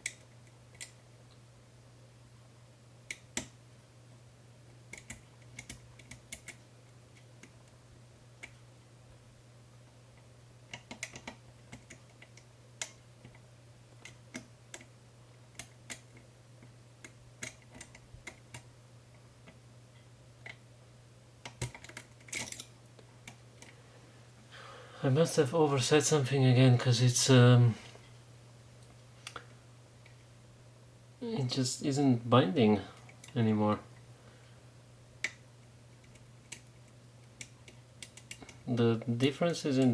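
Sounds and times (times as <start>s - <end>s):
steady low hum: 0.0s - 39.9s
lock pick clicking: 37.4s - 38.5s.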